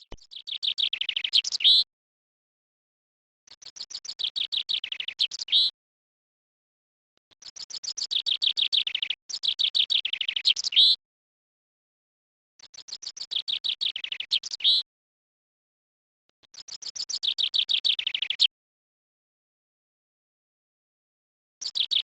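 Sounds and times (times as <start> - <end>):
songbird singing: 0.0 - 1.8, 12.7 - 14.8, 17.0 - 18.5, 21.6 - 22.0.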